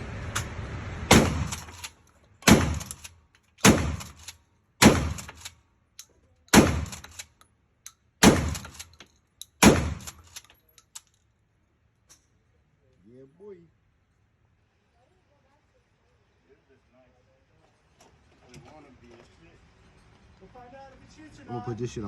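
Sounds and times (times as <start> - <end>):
echoing gunshots: 1.1 - 5.5, 6.5 - 7.2, 8.2 - 8.8, 9.6 - 10.3.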